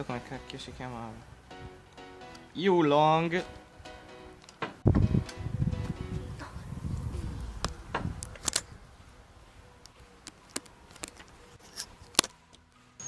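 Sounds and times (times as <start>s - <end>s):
wind buffeting microphone: 4.8s - 12.0s.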